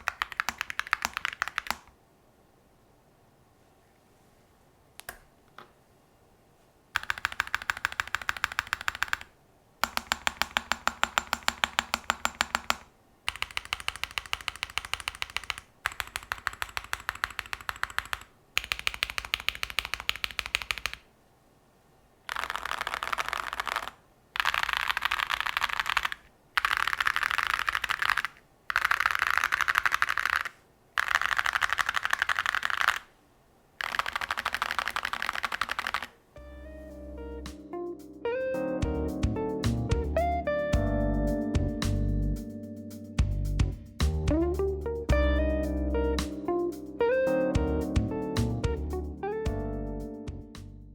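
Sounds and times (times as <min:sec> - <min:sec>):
mechanical keyboard typing: 0:00.0 - 0:01.9, 0:07.0 - 0:21.1, 0:22.3 - 0:33.1, 0:33.8 - 0:36.2.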